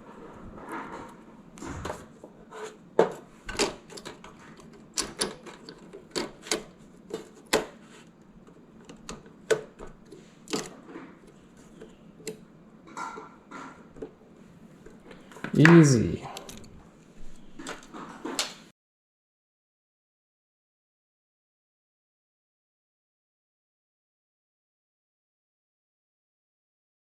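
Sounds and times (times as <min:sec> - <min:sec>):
plastic and metal parts clicking: 0:03.5 - 0:07.8, 0:08.5 - 0:12.4.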